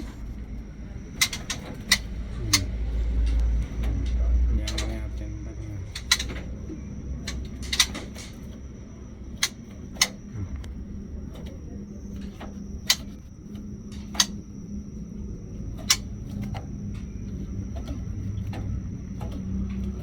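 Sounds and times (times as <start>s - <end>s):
high-pitched whine: 0.0s - 20.0s
low hum: 0.0s - 20.0s
sharp clicks: 5.8s - 6.5s.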